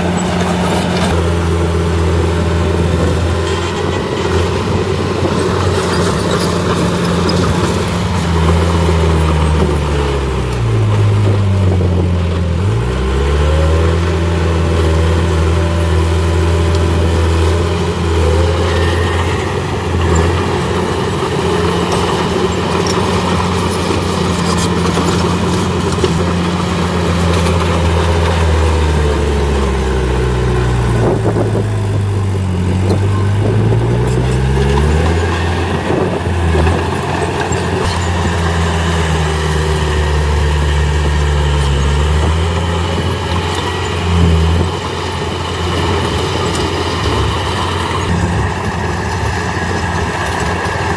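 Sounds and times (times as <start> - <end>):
heavy diesel engine running: 0.0 - 50.9.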